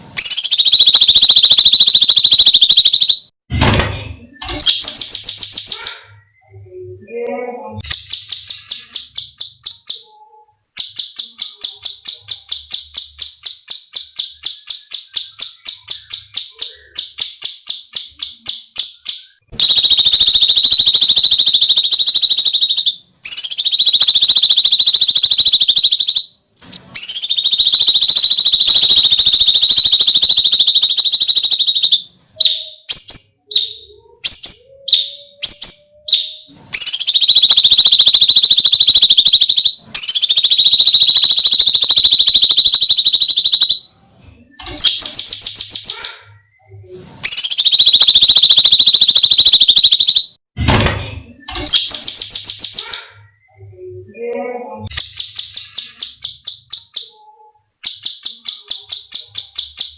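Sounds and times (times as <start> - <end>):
bird singing loudly: 0.2 - 3.3, 7.8 - 26.3, 27.0 - 50.4, 51.3 - 53.7.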